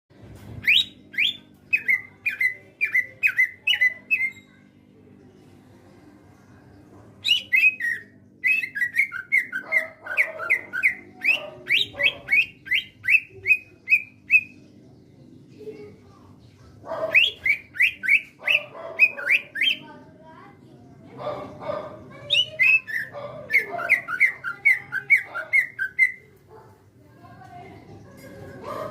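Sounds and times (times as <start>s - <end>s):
bird whistling song: 0.6s - 4.5s, 7.2s - 14.6s, 17.0s - 19.9s, 22.3s - 26.3s.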